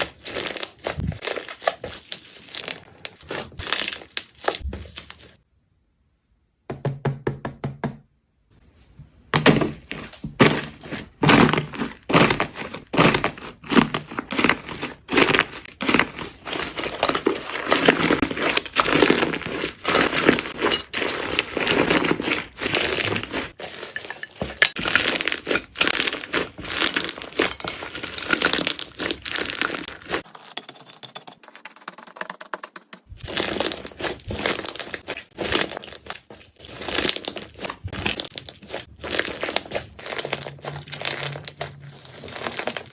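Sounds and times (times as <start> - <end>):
slime squeezed crackling: 10.0 - 23.6, 24.7 - 30.2, 33.1 - 42.9.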